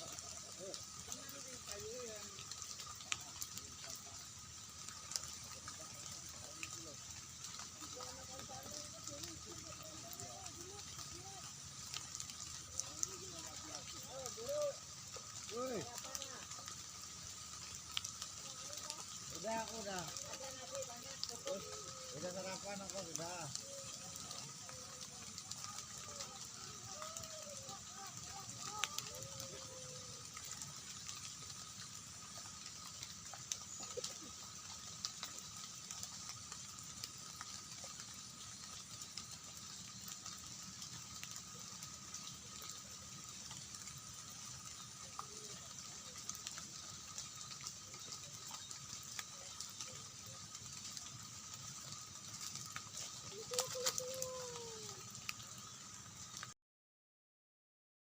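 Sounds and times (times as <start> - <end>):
constant hiss: 0.0 - 56.6.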